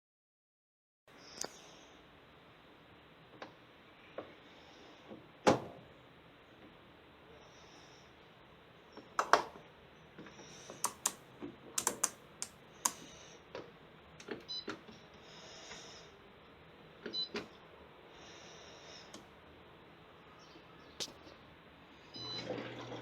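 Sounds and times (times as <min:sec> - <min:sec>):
sharp clicks and knocks: 0:10.7 - 0:13.0.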